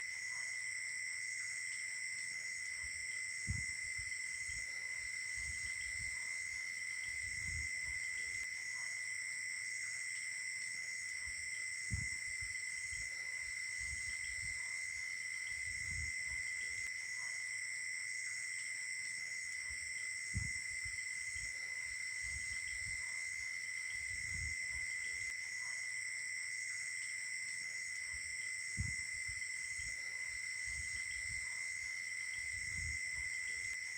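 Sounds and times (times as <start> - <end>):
crickets and insects trilling: 0.0 - 33.9
soft low thumps: 28.8 - 29.0.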